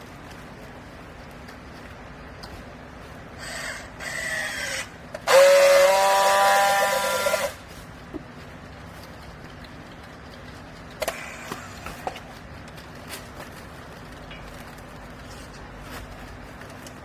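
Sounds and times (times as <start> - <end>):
small electric motor whining: 3.4 - 7.6.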